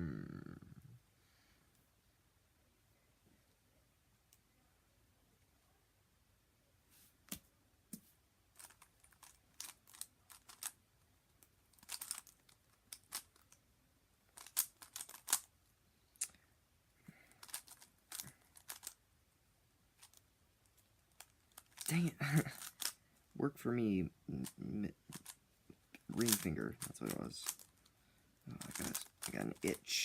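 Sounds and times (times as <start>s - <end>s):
speed cube clicking: 8.6s - 10.7s, 11.8s - 13.5s, 14.4s - 15.5s, 17.4s - 18.9s, 21.6s - 23.0s, 25.1s - 25.4s, 26.0s - 27.7s, 28.6s - 29.8s.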